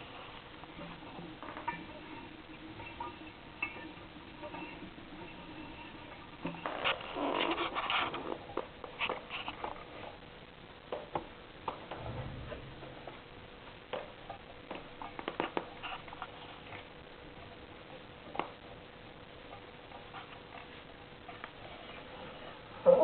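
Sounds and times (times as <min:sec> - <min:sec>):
dull low thump: 0:11.9 - 0:13.0.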